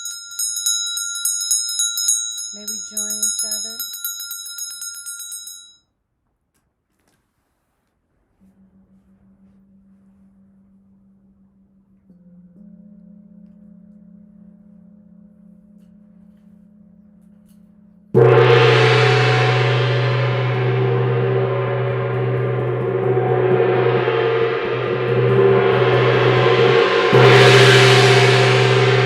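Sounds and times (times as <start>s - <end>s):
sound bath bowl ringing: 0.0s - 5.9s, 12.2s - 29.0s
metal instrument strike: 12.2s - 29.0s.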